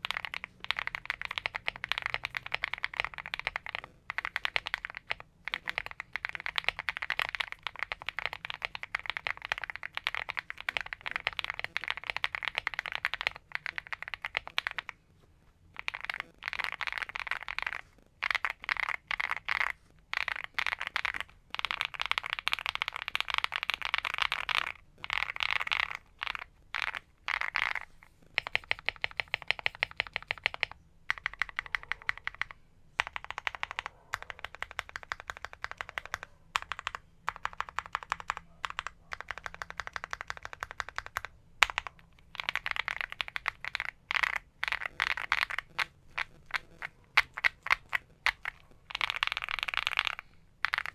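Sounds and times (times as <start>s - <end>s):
typing on mechanical keyboard: 0.0s - 15.0s, 15.8s - 50.9s.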